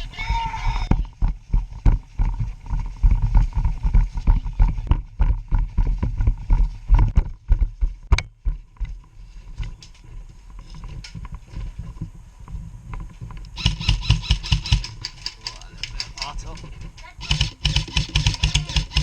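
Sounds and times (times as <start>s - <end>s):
kit rattling: 13.6s - 19.0s.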